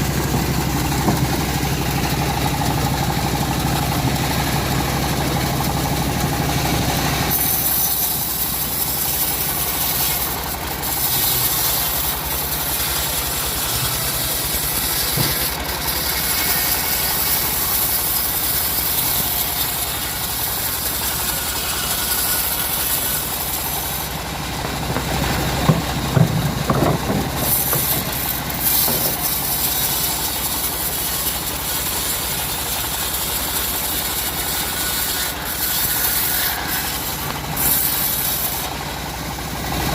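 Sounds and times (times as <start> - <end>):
sharp knocks: 0.0 - 2.7, 15.0 - 15.7, 24.6 - 29.4
band saw cutting timber: 0.0 - 39.9.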